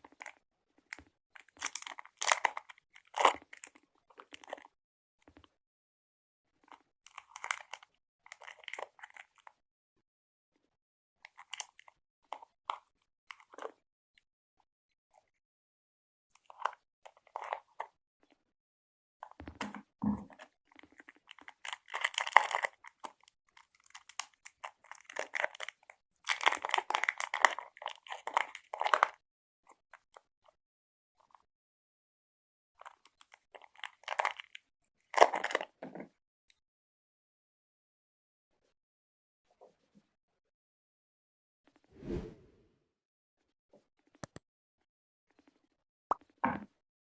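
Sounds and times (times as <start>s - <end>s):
candy and wrapper crunching: 1.6s - 2.6s, 21.4s - 22.8s, 24.9s - 29.0s, 33.8s - 34.4s, 35.2s - 35.6s.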